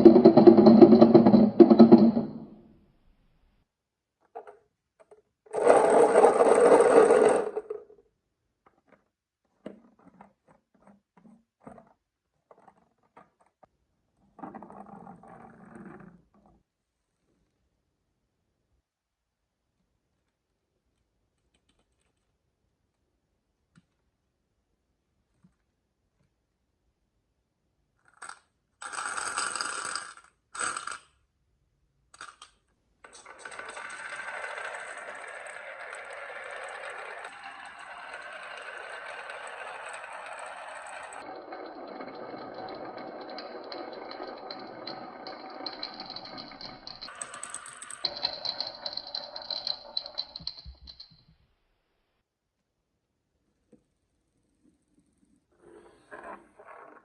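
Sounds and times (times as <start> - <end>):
marbles clicking on wooden track: 0.0 - 2.4, 5.5 - 7.9, 28.2 - 31.0, 32.2 - 51.2
marbles rattling down wooden run: 0.0 - 2.4, 5.6 - 7.8, 28.2 - 31.0, 33.1 - 51.2.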